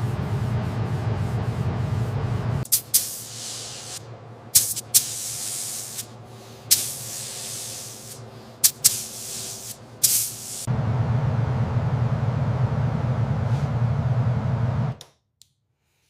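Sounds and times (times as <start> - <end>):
nozzle spraying hiss: 2.6 - 10.7.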